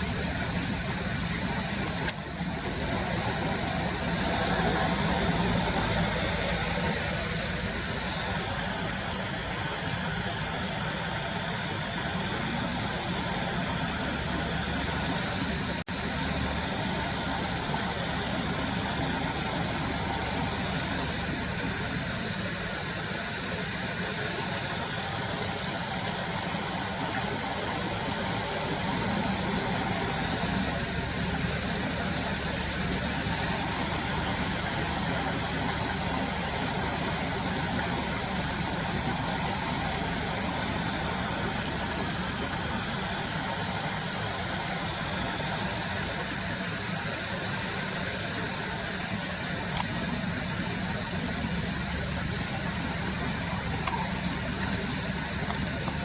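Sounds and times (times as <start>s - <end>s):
car engine idling: 0.0s - 56.0s.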